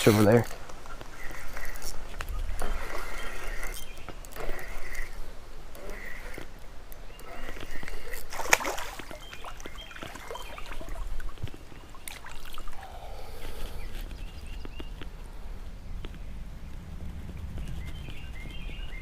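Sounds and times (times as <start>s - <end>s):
river water flowing: 4.4s - 13.7s
fish splashing water: 7.3s - 13.0s.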